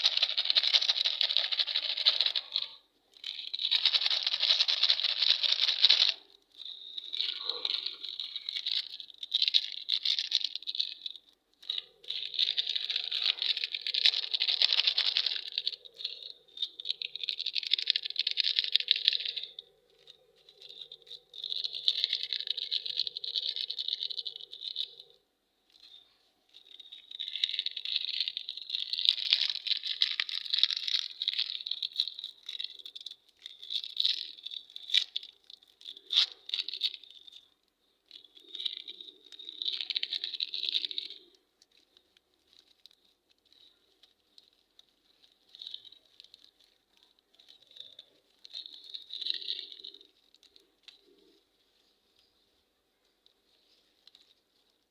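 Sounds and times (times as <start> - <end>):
candy wrappers crinkling: 0.0 - 54.9.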